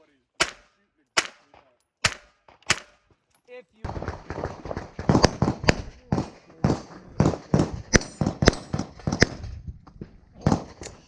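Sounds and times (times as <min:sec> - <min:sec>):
pistol shots fired rapidly: 0:00.4 - 0:03.0, 0:03.9 - 0:09.4.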